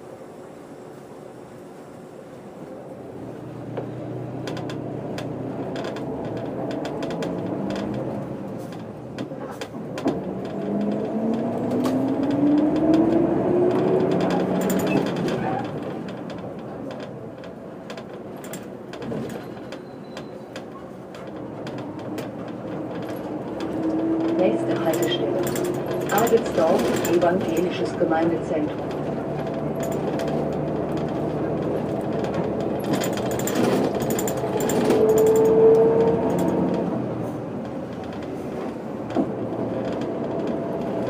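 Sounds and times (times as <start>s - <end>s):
bus diesel engine accelerating: 0.0s - 41.0s
bodywork rattles and clicks: 4.4s - 41.0s
gear change: 21.2s - 41.0s.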